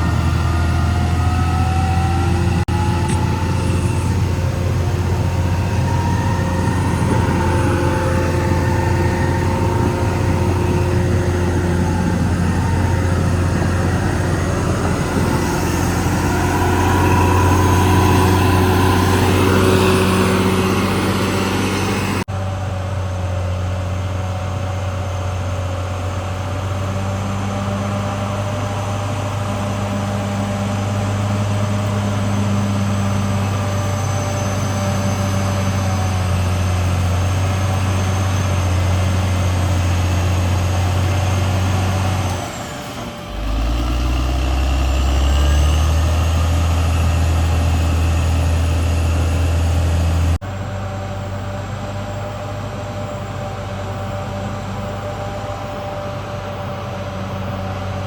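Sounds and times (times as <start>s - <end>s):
high whine: 0.0s - 22.8s
bulldozer diesel engine running: 0.0s - 58.0s.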